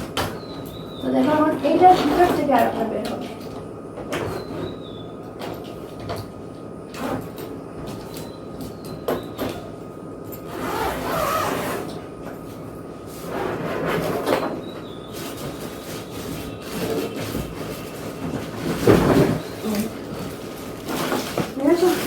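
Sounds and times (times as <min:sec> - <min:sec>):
suitcase scraping and sliding: 0:10.4 - 0:12.0, 0:13.1 - 0:14.5, 0:15.1 - 0:22.0.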